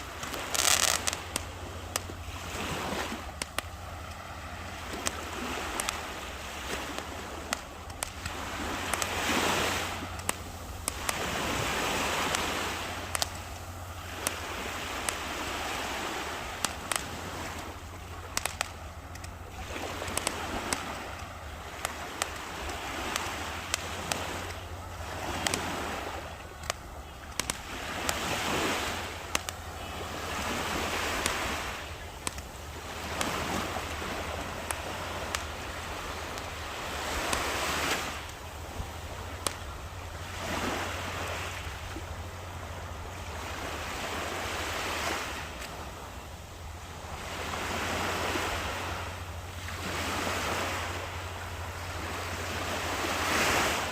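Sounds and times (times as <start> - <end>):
sea waves breaking on shore: 0.0 - 53.9
sharp clicks: 0.1 - 2.2, 3.1 - 4.2, 4.9 - 38.5.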